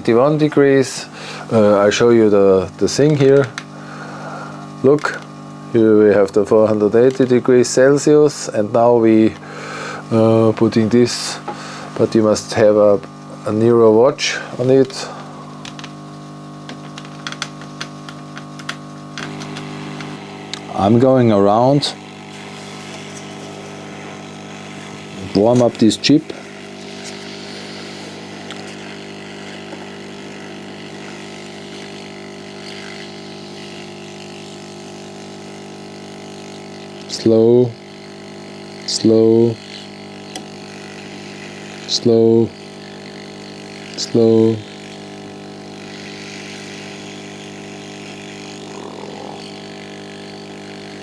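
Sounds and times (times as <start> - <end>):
hot air blower hum: 0.0 - 51.0
hiss of hot air: 22.2 - 25.4, 26.3 - 32.1, 44.9 - 51.0.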